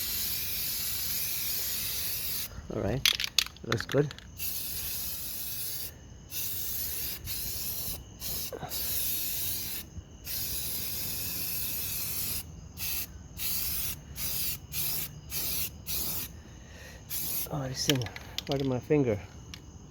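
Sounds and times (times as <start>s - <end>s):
aerosol spray can hissing: 0.0s - 2.5s, 4.4s - 16.3s, 17.1s - 17.5s.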